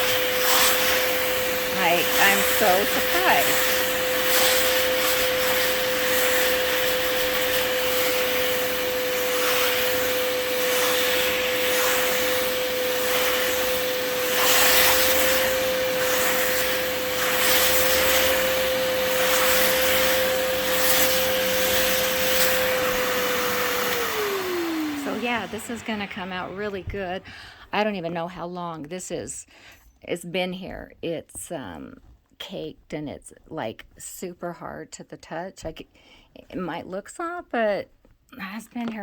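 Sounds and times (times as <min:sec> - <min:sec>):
suction rushing: 0:00.0 - 0:27.2
spot cleaner motor whine: 0:00.0 - 0:27.3.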